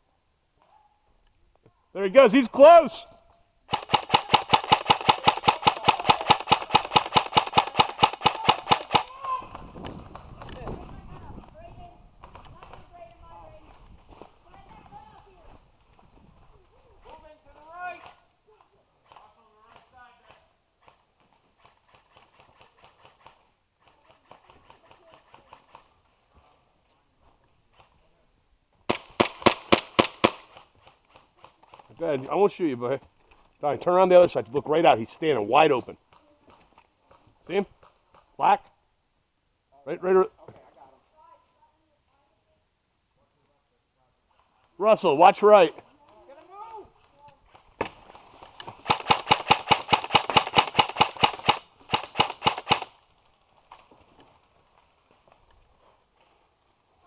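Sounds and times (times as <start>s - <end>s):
airsoft gun rapid shots: 3.7s - 9.2s, 28.9s - 30.6s, 48.8s - 52.9s
airsoft rifle full auto burst: 48.8s - 52.9s.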